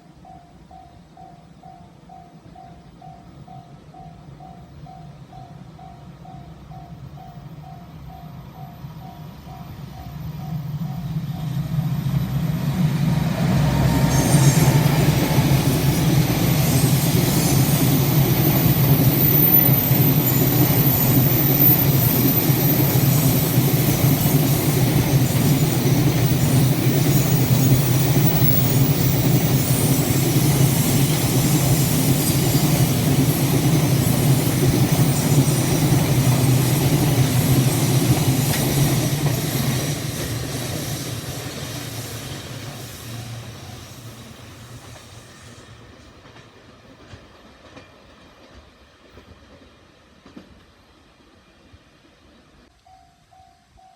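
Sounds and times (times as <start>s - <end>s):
train wheels rumbling on rail: 0.0s - 52.7s.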